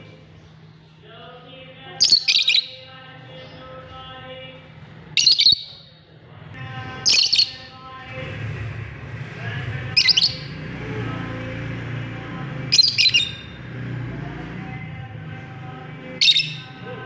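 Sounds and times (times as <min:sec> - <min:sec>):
lovebirds chirping: 0:02.0 - 0:03.8, 0:05.2 - 0:06.0, 0:07.0 - 0:07.9, 0:09.9 - 0:10.7, 0:12.7 - 0:13.6, 0:15.6 - 0:17.0.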